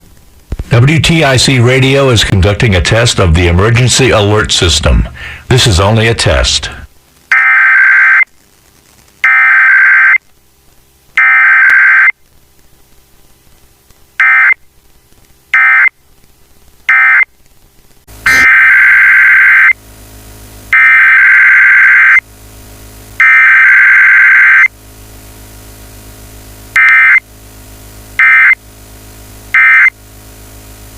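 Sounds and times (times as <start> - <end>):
steady mains hum: 0.0 - 30.9
digital data bursts: 9.2 - 10.2, 18.3 - 19.8, 20.8 - 22.2, 23.2 - 24.7, 26.8 - 27.2, 28.2 - 28.6, 29.5 - 29.9.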